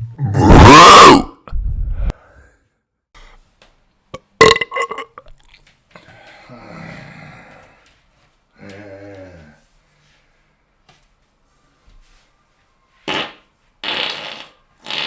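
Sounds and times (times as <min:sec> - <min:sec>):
person burping: 0:00.1 - 0:01.4, 0:04.4 - 0:05.4.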